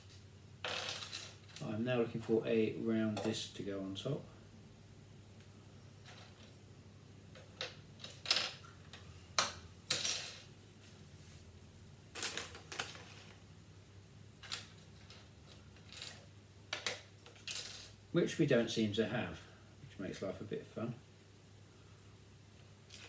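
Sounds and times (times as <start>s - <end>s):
low steady hum: 0.0s - 23.0s
plastic pieces clattering: 12.2s - 13.4s.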